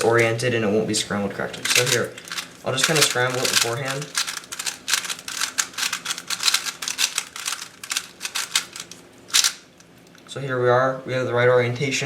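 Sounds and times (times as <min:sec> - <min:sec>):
puzzle cube layers clicking: 0:01.7 - 0:09.6.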